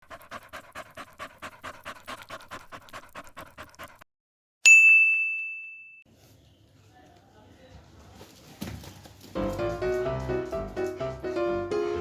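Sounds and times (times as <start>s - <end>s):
dog panting: 0.0s - 4.1s
bright bell-like ding: 4.7s - 6.0s.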